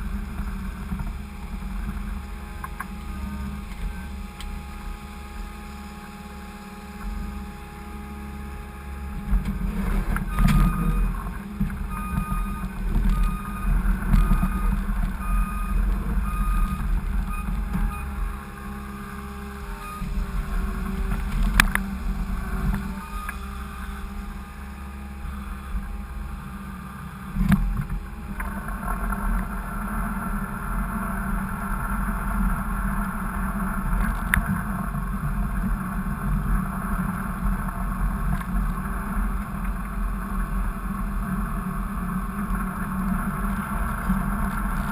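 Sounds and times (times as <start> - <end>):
skid steer engine running: 0.0 - 44.9
backup alarm beeping: 10.2 - 18.5, 19.7 - 21.0.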